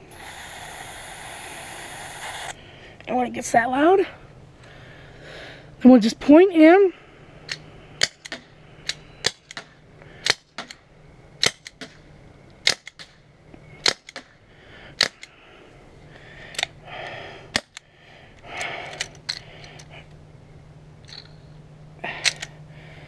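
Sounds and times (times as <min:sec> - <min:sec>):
airsoft revolver shots popping: 0:11.4 - 0:12.0, 0:12.6 - 0:13.2, 0:13.8 - 0:14.4.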